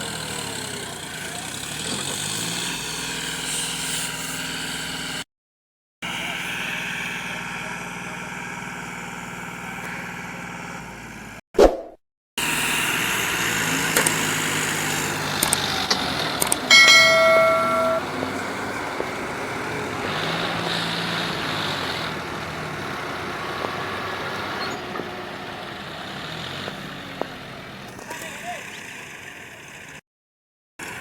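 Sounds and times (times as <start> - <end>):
diesel engines running: 0.0 - 5.2, 6.0 - 11.4, 12.4 - 30.0, 30.8 - 31.0
horn sounding: 16.7 - 18.4.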